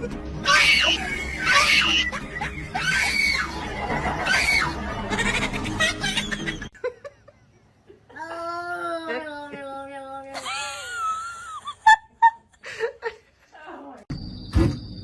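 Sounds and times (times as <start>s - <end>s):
background music: 0.0s - 6.8s
high screams: 0.4s - 4.8s.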